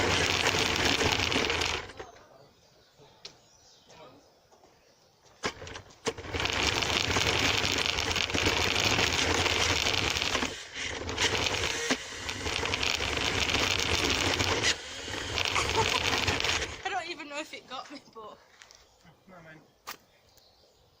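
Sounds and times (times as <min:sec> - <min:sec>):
toy car motor whirring: 0:00.0 - 0:02.0, 0:05.5 - 0:16.9.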